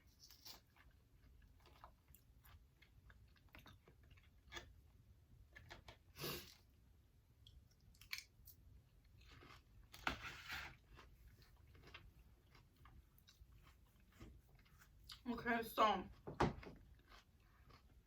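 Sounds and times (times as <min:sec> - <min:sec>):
chewing and crunching food: 0:00.0 - 0:18.0.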